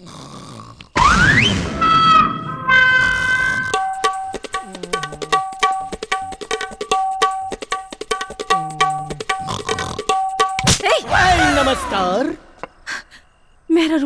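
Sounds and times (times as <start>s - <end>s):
tabla playing fast rhythm: 3.7s - 11.0s
simple melody: 3.8s - 10.8s.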